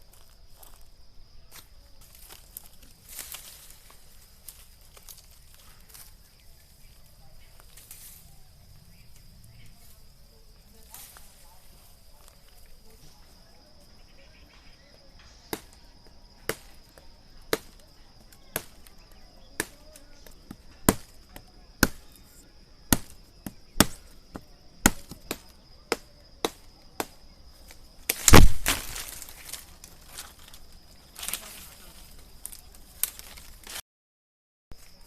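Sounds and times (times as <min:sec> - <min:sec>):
high insect trill: 0:00.0 - 0:33.8, 0:34.7 - 0:35.0
knife chopping wood: 0:18.5 - 0:18.8, 0:19.6 - 0:22.1, 0:22.9 - 0:27.2, 0:28.1 - 0:29.2.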